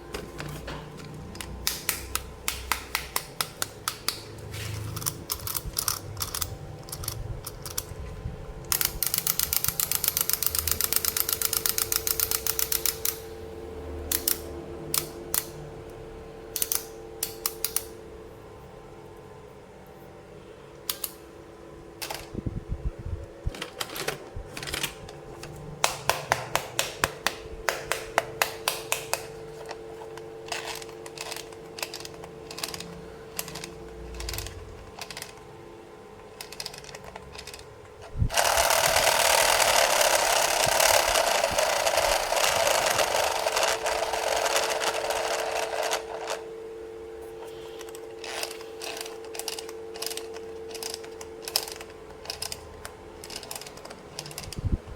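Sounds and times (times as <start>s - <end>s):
plastic toy parts clicking: 5.0s - 7.9s, 8.7s - 13.2s, 16.6s - 17.9s, 30.5s - 35.4s, 36.4s - 37.7s, 38.3s - 46.4s, 47.8s - 54.6s.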